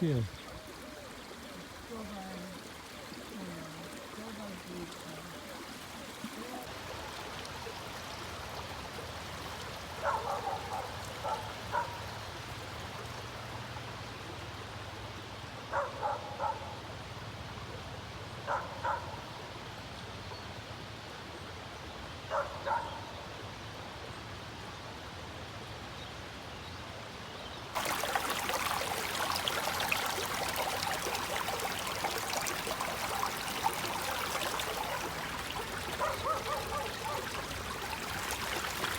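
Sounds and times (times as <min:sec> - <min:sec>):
stream water running: 0:00.0 - 0:24.5, 0:26.6 - 0:38.9
animal calls: 0:30.9 - 0:38.6.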